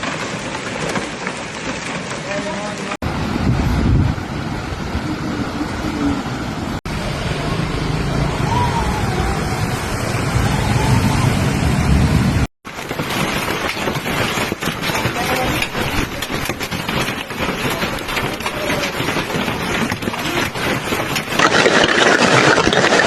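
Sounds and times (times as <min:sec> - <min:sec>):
hailstorm with rain: 0:00.0 - 0:23.0
street traffic: 0:01.2 - 0:21.4
faint voices: 0:14.8 - 0:20.8.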